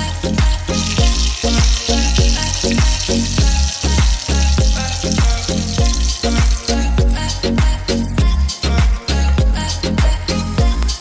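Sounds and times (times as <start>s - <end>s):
food frying in a pan: 0.0s - 7.9s
music with deep bass beat: 0.0s - 11.0s.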